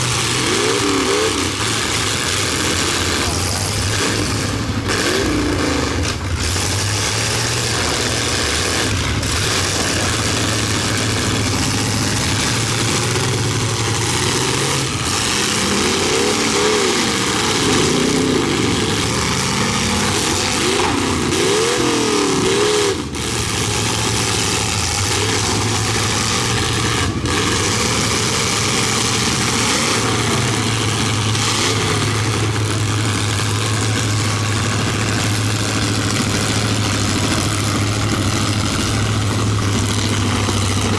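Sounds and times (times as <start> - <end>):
car engines revving: 0.0 - 40.9.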